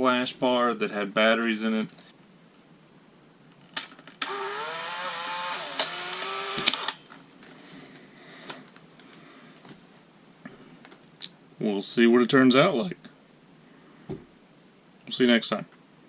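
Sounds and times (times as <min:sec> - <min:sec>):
small motor whirring: 0:04.2 - 0:07.0.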